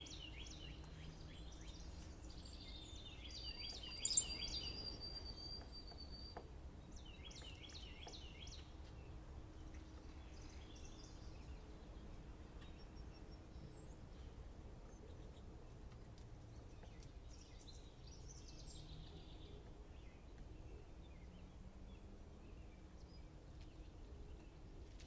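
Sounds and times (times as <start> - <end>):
birds calling: 0.0 - 5.7.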